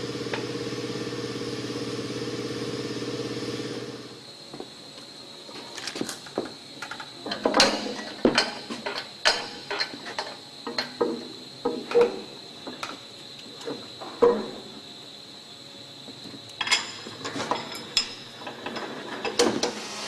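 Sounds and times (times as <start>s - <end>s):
metallic clanks and knocks: 6.8s - 12.2s.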